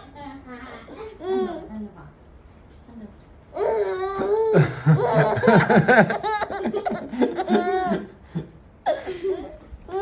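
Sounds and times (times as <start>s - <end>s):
baby laughing: 3.6s - 8.2s.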